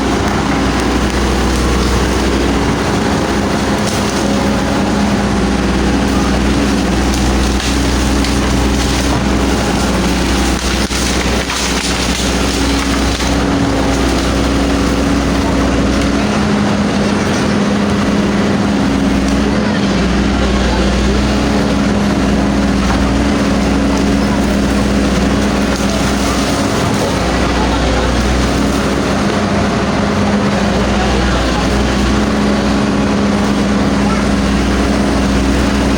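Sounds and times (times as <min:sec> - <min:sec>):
excavator diesel engine running: 0:00.0 - 0:35.9
bamboo cracking and snapping: 0:06.5 - 0:15.0.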